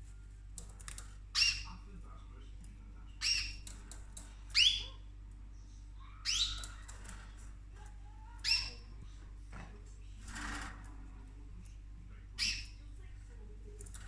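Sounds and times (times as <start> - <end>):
noisy rasping sound: 9.5 - 11.4.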